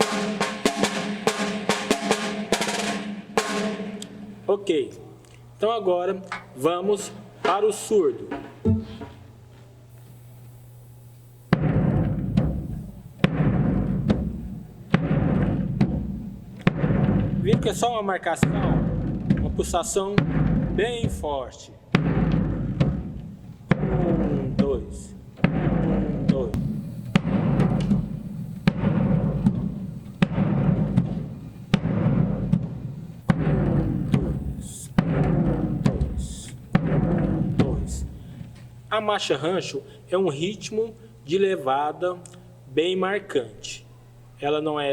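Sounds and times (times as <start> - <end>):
bass drum beating: 8.7 - 9.4, 11.4 - 38.4.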